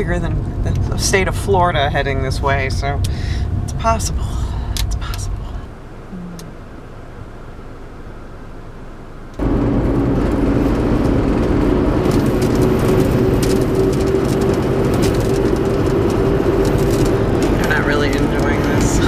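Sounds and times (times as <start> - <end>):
car road noise: 0.0 - 19.0
loud drone with hum: 8.2 - 19.0.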